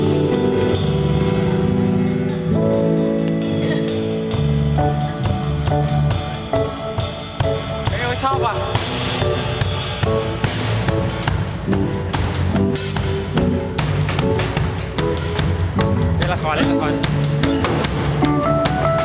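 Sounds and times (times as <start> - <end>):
instrumental rock music: 0.0 - 19.0.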